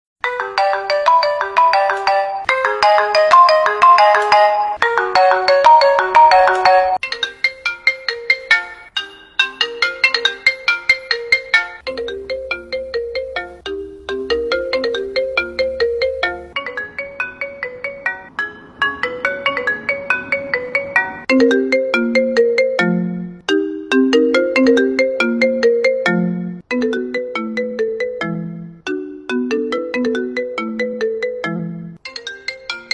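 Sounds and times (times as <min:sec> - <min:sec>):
phone ringtone melody: 0:00.2 - 0:32.9.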